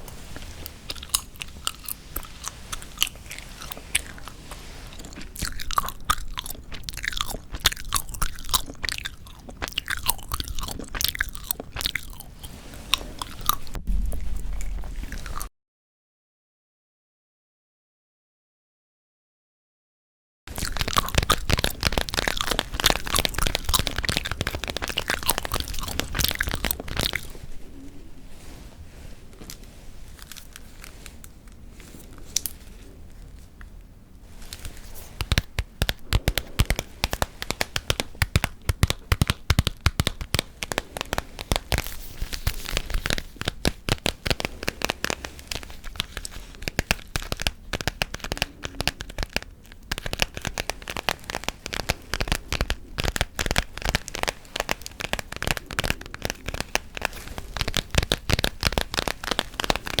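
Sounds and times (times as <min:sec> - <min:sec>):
gum chewing: 0:00.0 - 0:15.5, 0:20.5 - 0:27.4, 0:34.5 - 0:49.4.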